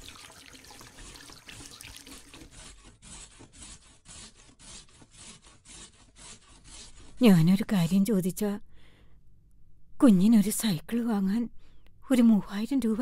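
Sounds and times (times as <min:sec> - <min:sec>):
hand scrubbing strokes: 0:00.0 - 0:07.1.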